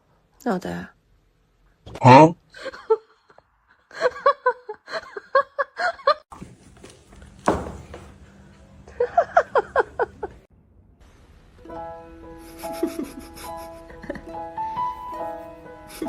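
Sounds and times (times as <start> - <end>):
sharp knock: 7.5 - 8.2.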